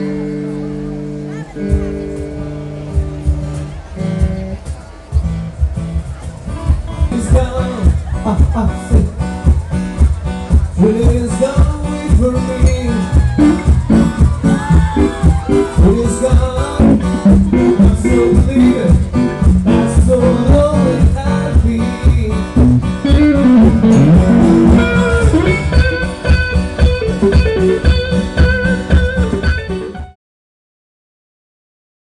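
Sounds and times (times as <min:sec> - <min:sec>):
band music with guitar: 0:00.0 - 0:30.2
person singing: 0:19.7 - 0:25.8.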